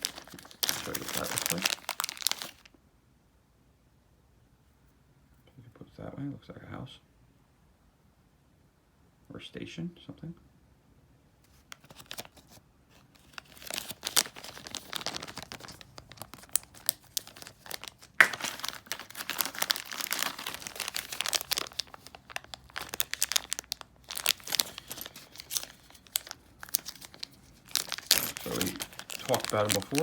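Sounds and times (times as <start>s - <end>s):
plastic bag crinkling: 0.0s - 2.7s, 11.8s - 30.0s.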